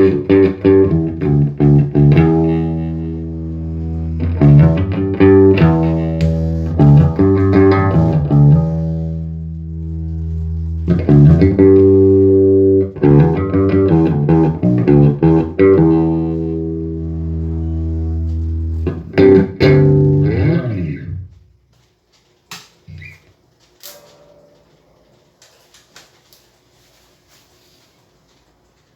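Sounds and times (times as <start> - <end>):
electric bass notes plucked: 0.0 - 21.3.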